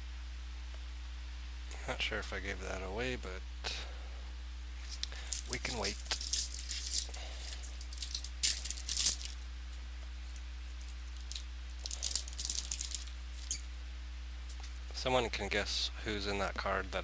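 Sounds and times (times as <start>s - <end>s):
low electrical hum: 0.0s - 17.0s
trading cards crinkling and rustling: 4.8s - 13.7s.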